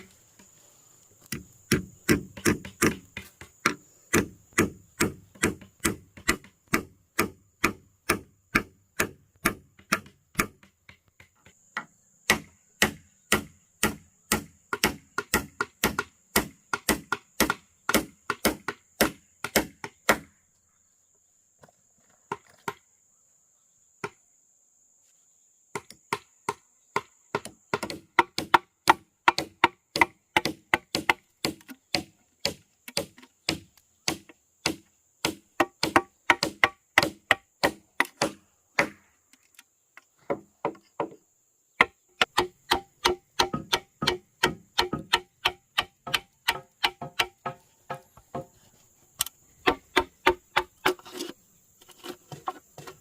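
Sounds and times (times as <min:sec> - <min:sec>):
tool striking wood: 0:01.3 - 0:20.3, 0:25.8 - 0:39.0, 0:41.8 - 0:48.5, 0:49.6 - 0:51.0.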